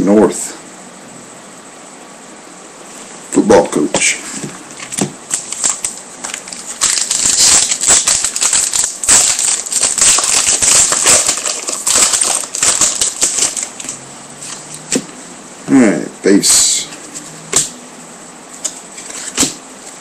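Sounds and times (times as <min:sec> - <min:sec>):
wrapper tearing and crinkling: 0:04.8 - 0:15.0.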